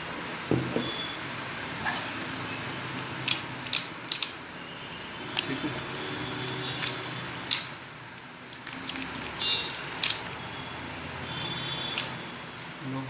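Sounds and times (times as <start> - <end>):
metallic clicks and snaps: 3.2 - 4.4, 5.4 - 5.6, 6.8 - 10.4, 11.9 - 12.2.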